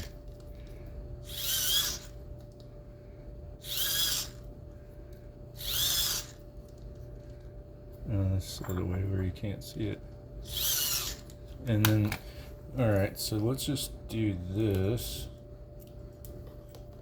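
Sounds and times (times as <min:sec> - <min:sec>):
small motor whirring whine: 0:00.0 - 0:02.3, 0:03.0 - 0:06.5, 0:10.4 - 0:11.4.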